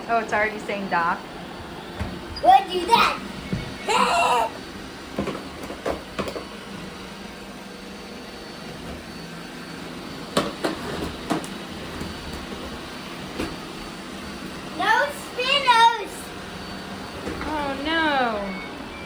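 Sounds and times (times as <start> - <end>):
robot vacuum humming: 0.0 - 19.0.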